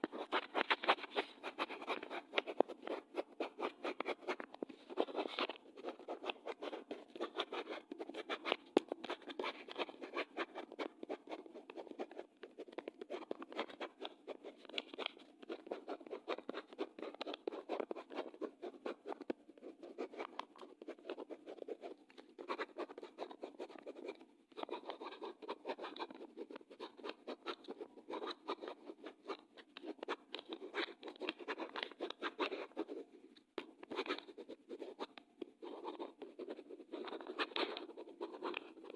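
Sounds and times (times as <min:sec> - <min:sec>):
pen scratching on paper: 0:00.0 - 0:38.9.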